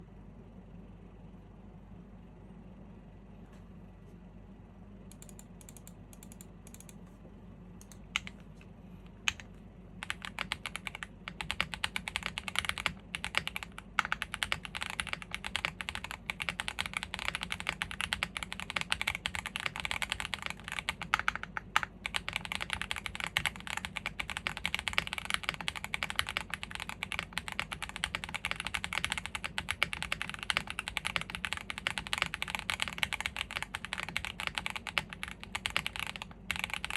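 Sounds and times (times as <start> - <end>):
typing on mechanical keyboard: 7.8 - 8.4, 9.3 - 36.9.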